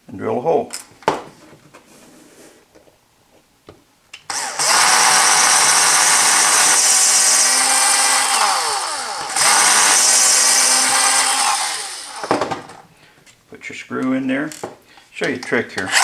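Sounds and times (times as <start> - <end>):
electric drill drilling wood: 4.3 - 12.8.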